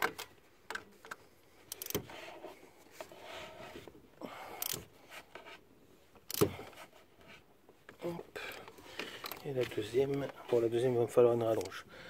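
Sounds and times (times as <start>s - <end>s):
wrench clicking and scraping: 0.0s - 2.2s, 4.6s - 4.9s, 6.2s - 6.8s.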